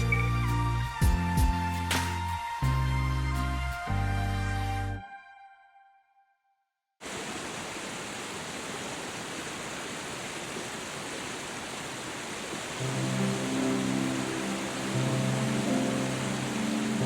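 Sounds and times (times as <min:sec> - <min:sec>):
music: 0:00.0 - 0:06.6, 0:12.8 - 0:17.0
waterfall rushing: 0:07.0 - 0:17.0.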